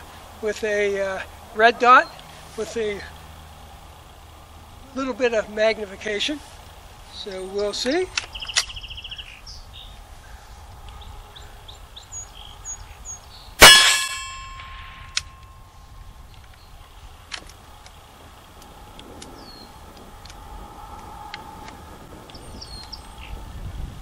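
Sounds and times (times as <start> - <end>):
birds chirping: 0.0 - 23.9
rifle shot: 13.6 - 15.3
faint clicks: 18.6 - 23.0.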